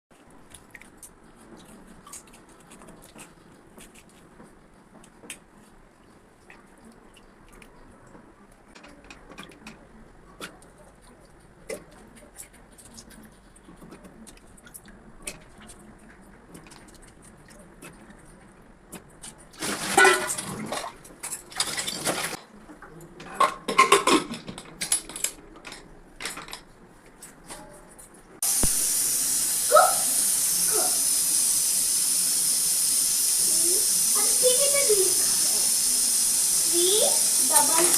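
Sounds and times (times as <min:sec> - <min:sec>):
kitchen clatter: 0:08.7 - 0:11.1, 0:19.2 - 0:27.7, 0:36.7 - 0:37.9
pressure cooker steam hiss: 0:28.4 - 0:37.9.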